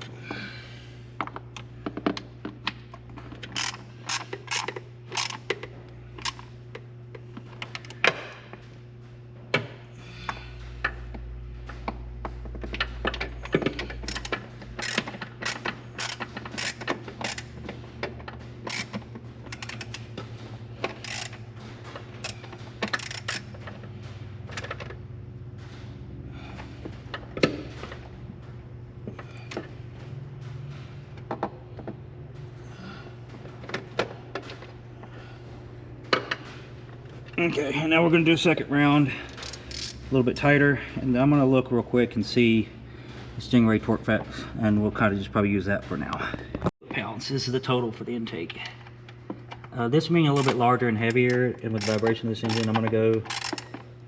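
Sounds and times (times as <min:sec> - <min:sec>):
steady low hum: 0:00.0 - 0:54.0
ratchet clicking: 0:03.4 - 0:06.5, 0:14.0 - 0:17.6, 0:18.6 - 0:20.1, 0:20.8 - 0:21.5, 0:22.2 - 0:23.8, 0:39.3 - 0:40.0, 0:51.8 - 0:53.8.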